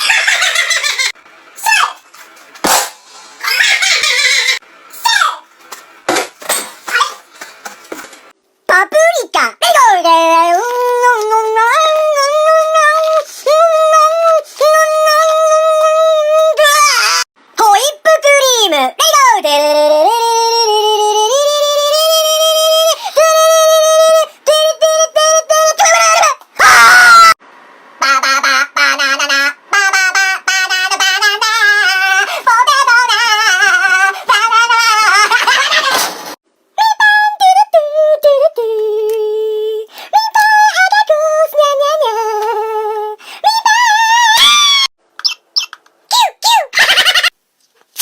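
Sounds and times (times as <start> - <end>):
harsh squawk: 3.4 - 5.4
high-pitched wordless singing: 8.7 - 27.4, 28.0 - 35.7, 36.7 - 44.9.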